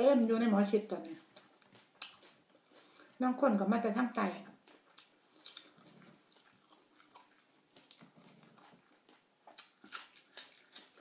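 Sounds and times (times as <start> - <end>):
person chewing and smacking: 1.0 - 3.2, 4.4 - 11.0.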